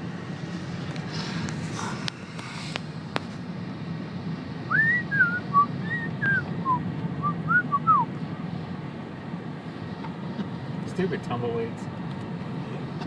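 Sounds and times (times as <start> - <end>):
car cabin drone: 0.0 - 13.0
person whistling: 4.7 - 8.0.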